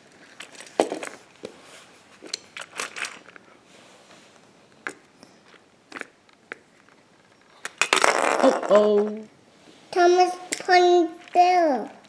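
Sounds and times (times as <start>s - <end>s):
toy trains knocking and clattering: 0.4s - 1.2s, 7.6s - 9.2s, 10.2s - 12.0s.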